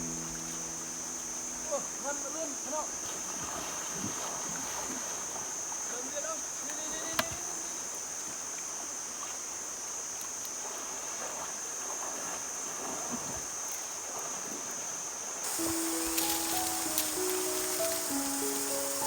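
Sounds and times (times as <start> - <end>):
river water flowing: 0.0 - 6.7, 15.4 - 19.0.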